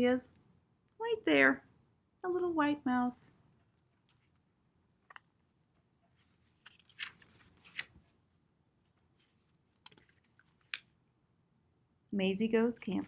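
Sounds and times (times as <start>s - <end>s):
book pages rustling: 6.1s - 8.2s, 8.8s - 10.8s
light clicks from book: 6.6s - 8.0s.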